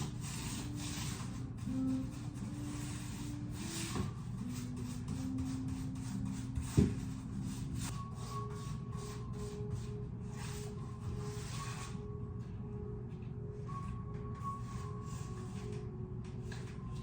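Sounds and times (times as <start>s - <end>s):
paintbrush scratching on wall: 0.0s - 12.0s, 14.4s - 15.7s
soft background music: 0.0s - 17.0s.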